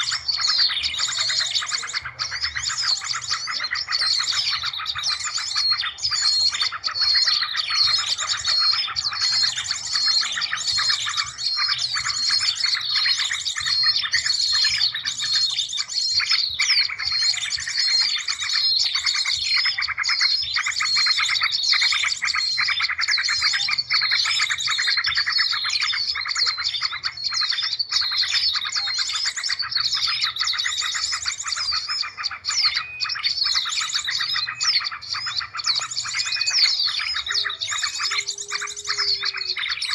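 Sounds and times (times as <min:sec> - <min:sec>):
small birds chirping and twittering: 0:00.0 - 0:39.9.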